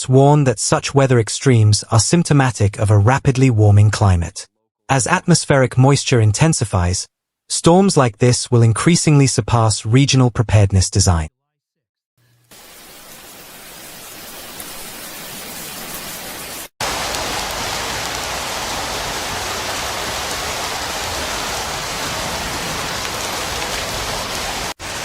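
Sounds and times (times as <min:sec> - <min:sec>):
heavy rain hissing: 0:12.2 - 0:25.0.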